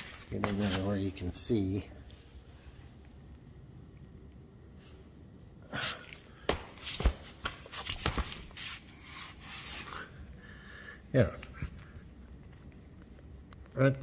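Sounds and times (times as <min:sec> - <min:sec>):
handling knocks clicks and rustles: 0:00.0 - 0:01.4.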